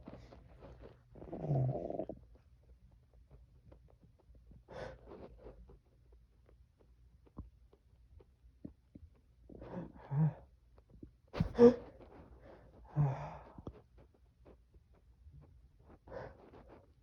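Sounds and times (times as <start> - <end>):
man breathing heavily: 11.4 - 11.8.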